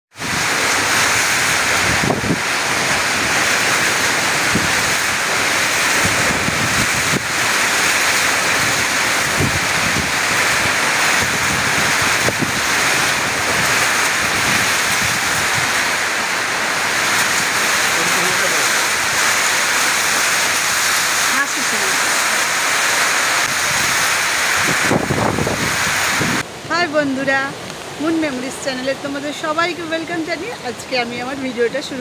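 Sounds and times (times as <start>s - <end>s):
wind-driven rain rushing: 0.1s - 32.0s
wind buffeting microphone: 0.2s - 26.9s.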